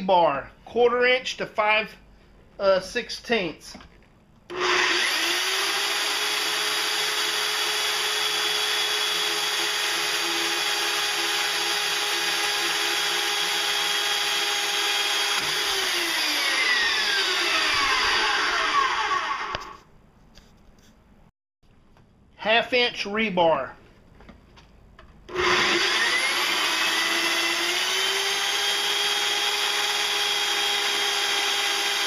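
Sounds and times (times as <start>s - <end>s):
band saw cutting rebar: 4.5s - 19.8s, 25.3s - 32.0s
motor whine spinning down: 15.2s - 19.8s.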